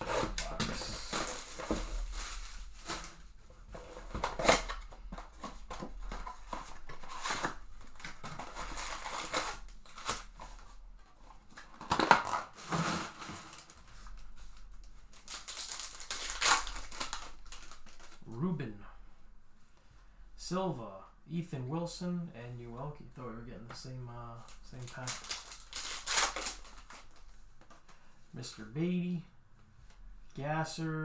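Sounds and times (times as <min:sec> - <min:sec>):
cardboard rubbing: 0:00.0 - 0:18.2
plastic and foil wrapping crinkling: 0:00.0 - 0:18.3, 0:23.7 - 0:28.0.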